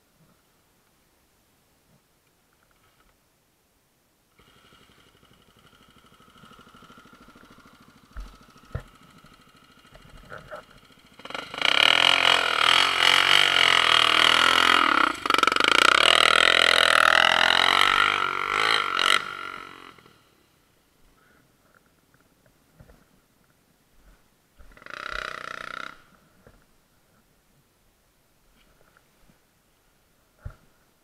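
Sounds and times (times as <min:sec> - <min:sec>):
motorcycle engine revving: 0:04.3 - 0:20.4, 0:24.6 - 0:26.6.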